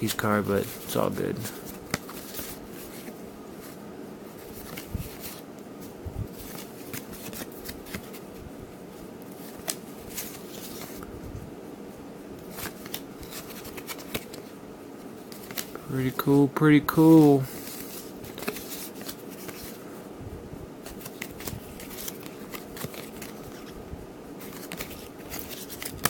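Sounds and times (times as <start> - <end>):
steady low hum: 0.0 - 26.0
cardboard cards slapping and rustling: 0.6 - 3.8, 4.4 - 8.4, 9.3 - 11.1, 12.4 - 14.5, 15.2 - 15.8, 17.1 - 19.8, 20.8 - 23.8, 24.4 - 26.0.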